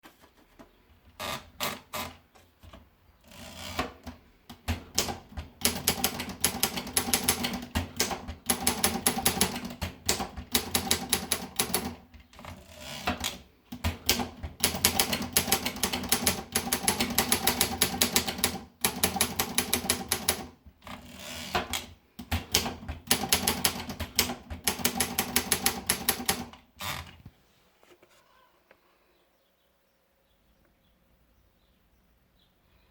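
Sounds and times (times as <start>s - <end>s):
manual typewriter typing: 1.1s - 2.2s, 3.3s - 27.2s.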